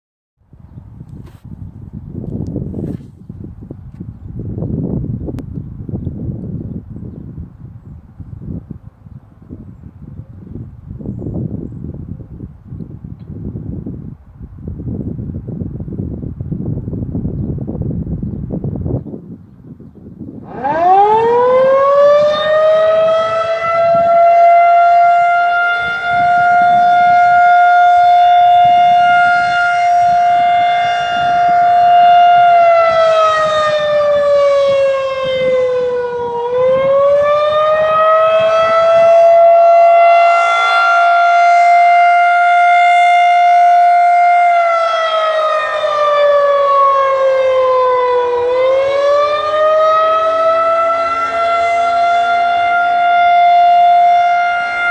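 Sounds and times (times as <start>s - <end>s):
warning siren wailing: 20.4s - 54.9s.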